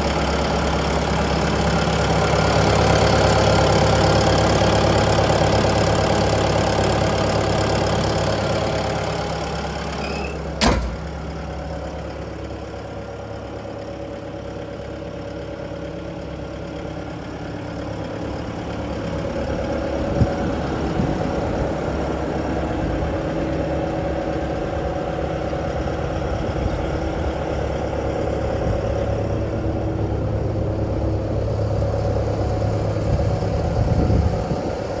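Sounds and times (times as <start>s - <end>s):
diesel engine running: 0.0s - 35.0s.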